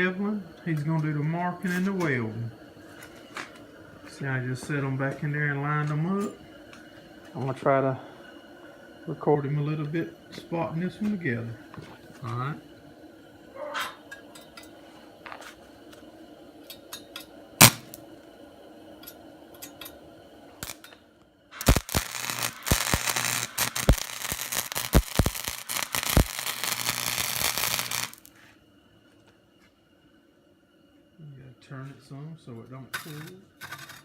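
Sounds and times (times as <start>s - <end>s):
arc welder crackling: 17.6s - 18.1s, 20.6s - 28.3s.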